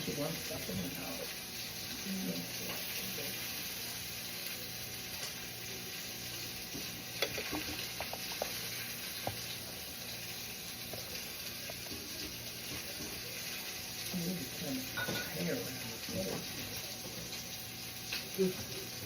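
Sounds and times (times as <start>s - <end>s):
food sizzling in a frying pan: 0.0s - 19.0s
utensil clicking against pan: 7.2s - 9.5s.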